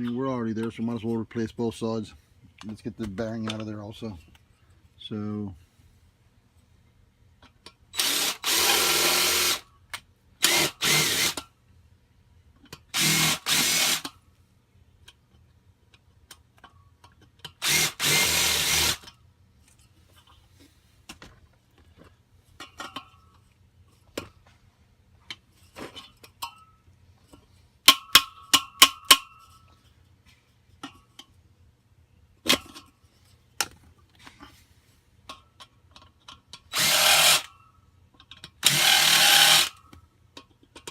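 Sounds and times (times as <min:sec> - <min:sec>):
power drill running: 0:08.0 - 0:09.6, 0:10.4 - 0:11.4, 0:13.0 - 0:14.1, 0:17.6 - 0:19.1, 0:36.7 - 0:37.5, 0:38.6 - 0:39.8.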